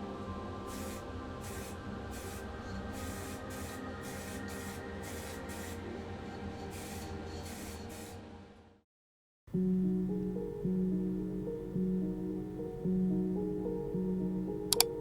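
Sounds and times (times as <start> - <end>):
spray paint hissing in bursts: 0.7 - 5.9, 6.7 - 8.2
steady low hum: 9.6 - 15.0.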